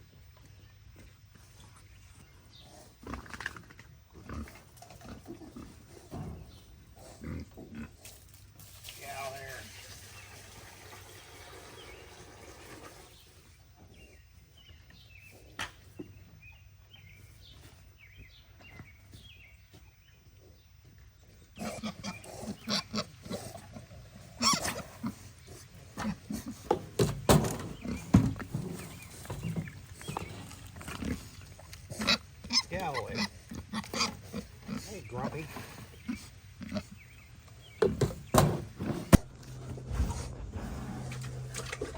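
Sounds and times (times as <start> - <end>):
pigs grunting: 2.5 - 8.2, 21.3 - 27.0, 27.6 - 41.9.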